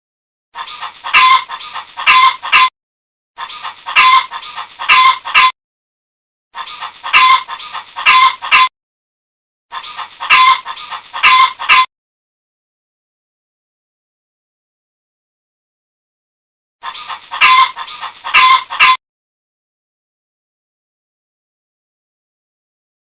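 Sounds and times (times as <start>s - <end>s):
chicken clucking: 0.6s - 2.7s, 3.4s - 5.6s, 6.6s - 8.7s, 9.7s - 11.9s, 16.8s - 19.0s.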